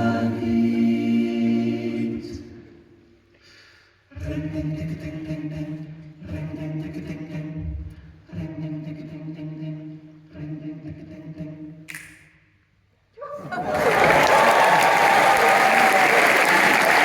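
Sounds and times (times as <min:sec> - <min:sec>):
vocal group singing chords: 0:00.0 - 0:03.1, 0:04.0 - 0:12.2.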